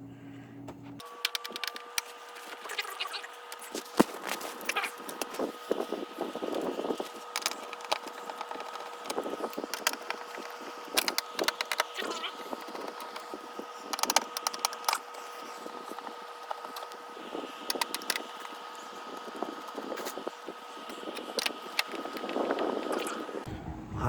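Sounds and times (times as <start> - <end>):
plastic casing clicking and cracking: 7.3 - 15.1.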